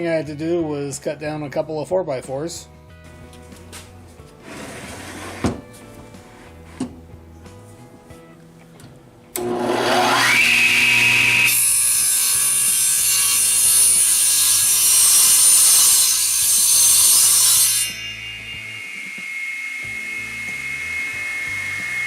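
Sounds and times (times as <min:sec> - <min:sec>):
power saw motor whine: 0:09.4 - 0:11.6, 0:17.8 - 0:22.0
saw blade cutting wood: 0:09.4 - 0:22.0.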